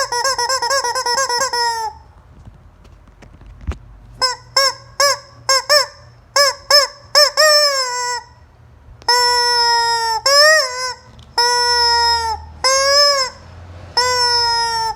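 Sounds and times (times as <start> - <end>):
chicken squawking: 0.0 - 2.1, 4.2 - 8.3, 9.1 - 14.9.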